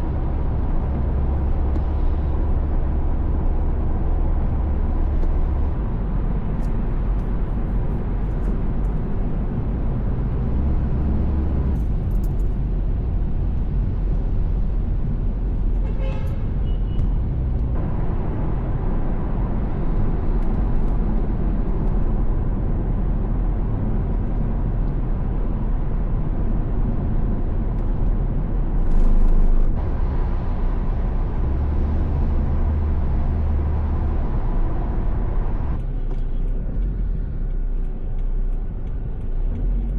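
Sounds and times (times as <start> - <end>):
car road noise at speed: 0.0 - 39.9
passing traffic wash: 0.0 - 39.9.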